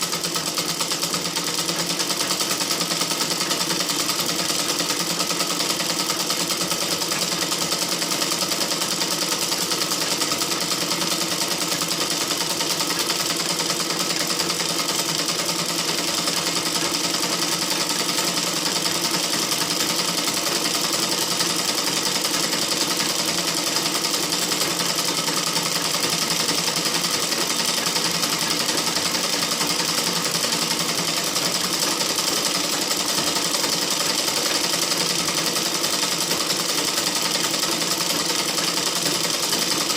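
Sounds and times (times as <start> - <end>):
sewing machine running: 0.0 - 39.9.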